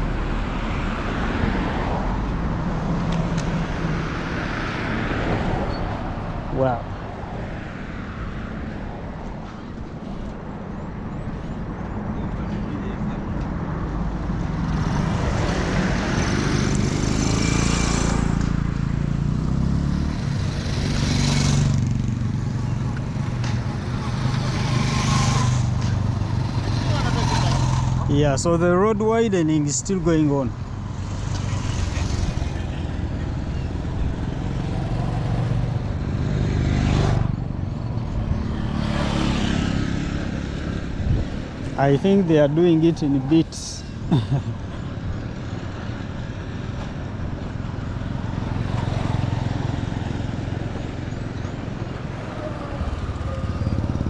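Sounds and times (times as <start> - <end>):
vehicle passing by: 13.7 - 54.0.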